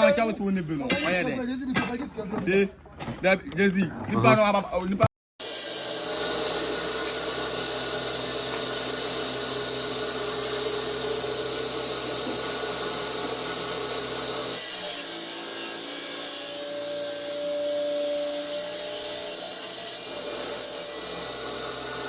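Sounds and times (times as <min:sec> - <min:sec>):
stone-cutting saw whining: 0:05.4 - 0:22.0.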